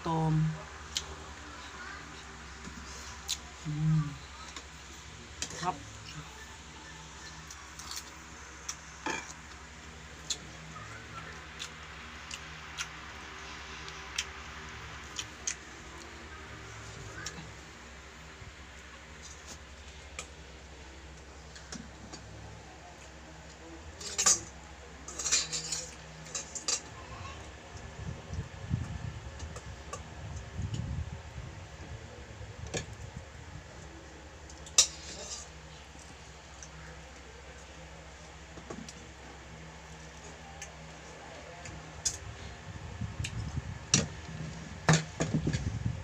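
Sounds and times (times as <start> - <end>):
steady low hum: 0.0 - 46.0
soft chewing: 0.7 - 17.7.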